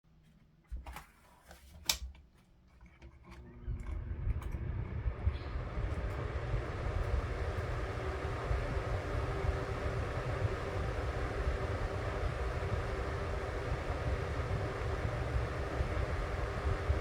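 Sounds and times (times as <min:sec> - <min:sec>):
desk fan air rushing: 0:04.2 - 0:17.0.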